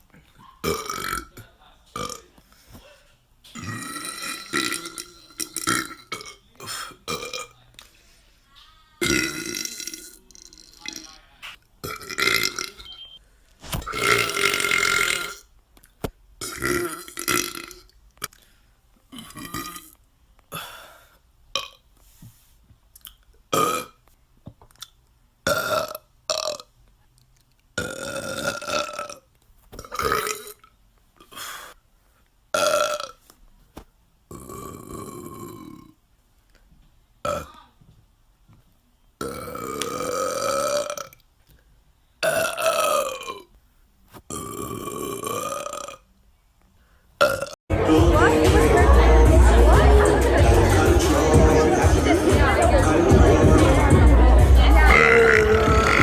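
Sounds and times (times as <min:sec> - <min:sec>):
people belching: 0:00.4 - 0:01.4, 0:02.0 - 0:02.3, 0:03.5 - 0:07.6, 0:09.0 - 0:11.1, 0:11.8 - 0:12.9, 0:13.8 - 0:15.4, 0:16.4 - 0:17.9, 0:19.1 - 0:19.9, 0:23.6 - 0:24.0, 0:25.5 - 0:26.6, 0:27.8 - 0:29.2, 0:34.3 - 0:36.0, 0:37.2 - 0:37.6, 0:39.2 - 0:41.2, 0:42.2 - 0:43.5, 0:44.3 - 0:46.0, 0:47.2 - 0:56.0.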